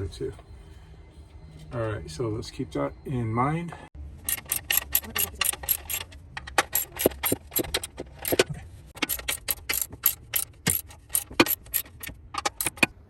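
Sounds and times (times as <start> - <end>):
sharp metallic clicking: 4.2 - 13.0.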